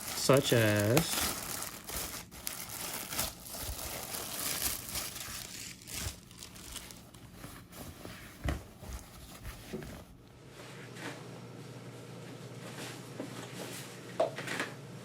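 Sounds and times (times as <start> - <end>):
packaging crinkling and tearing: 0.0 - 7.8.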